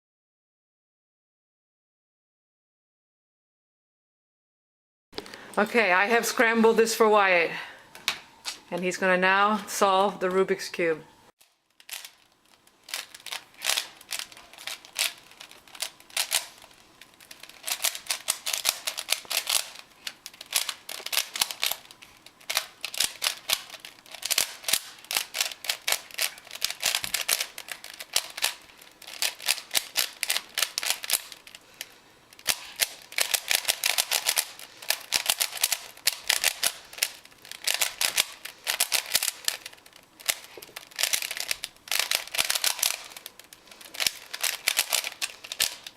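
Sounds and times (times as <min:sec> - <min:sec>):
plastic puzzle cube clicking: 0:11.8 - 0:45.9.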